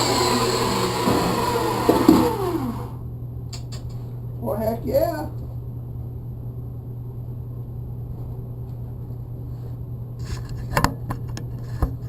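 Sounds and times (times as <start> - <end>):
band saw humming: 0.0 - 3.0.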